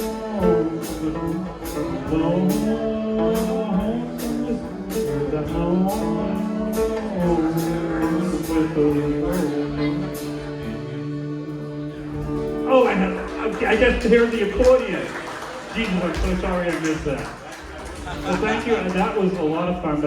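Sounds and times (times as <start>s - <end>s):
slide guitar: 0.0s - 15.0s
acoustic guitar strumming: 0.0s - 17.2s.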